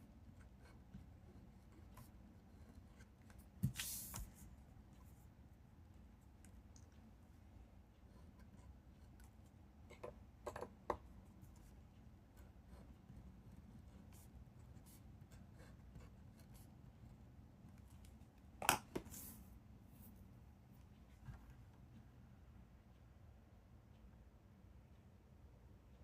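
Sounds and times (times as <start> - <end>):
pen tapping: 9.9 - 11.0.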